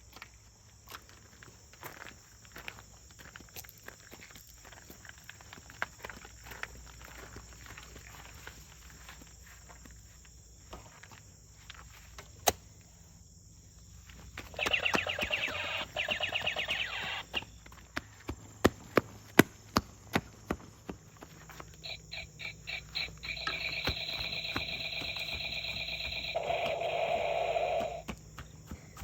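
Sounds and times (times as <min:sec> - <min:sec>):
toy gun electronic rapid-fire: 0:14.5 - 0:17.5, 0:21.8 - 0:28.1.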